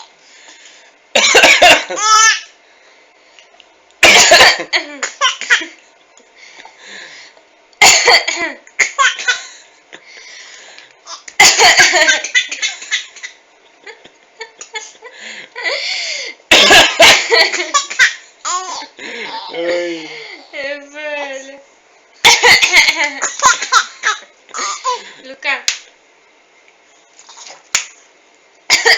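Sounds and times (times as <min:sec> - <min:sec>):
person coughing: 0:01.2 - 0:01.9, 0:04.0 - 0:05.7, 0:07.8 - 0:09.5, 0:16.5 - 0:18.6, 0:24.5 - 0:25.1.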